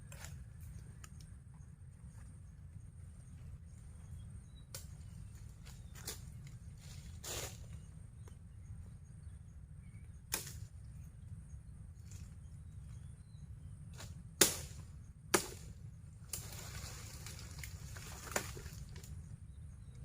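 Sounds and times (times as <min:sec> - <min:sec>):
steady low rumble: 0:00.0 - 0:20.0.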